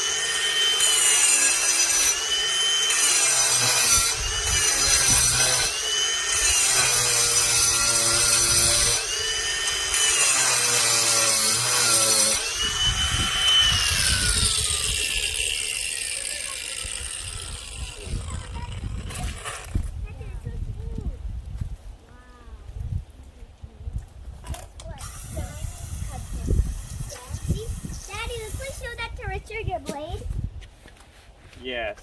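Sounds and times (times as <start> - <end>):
angle grinder grinding concrete: 0.0 - 20.1, 25.0 - 29.4.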